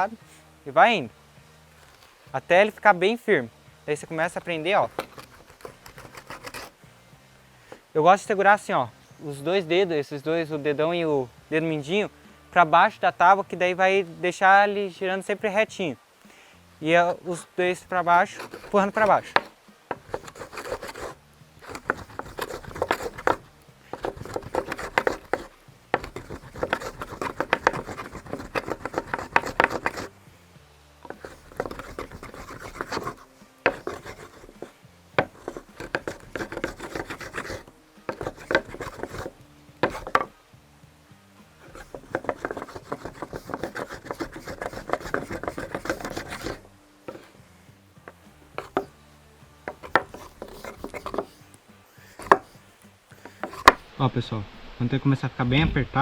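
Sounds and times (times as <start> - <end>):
wooden boards rasping rub: 1.8 - 2.2, 4.0 - 6.8, 16.9 - 30.1, 31.0 - 40.4, 41.6 - 47.4, 48.1 - 48.9, 49.6 - 53.9.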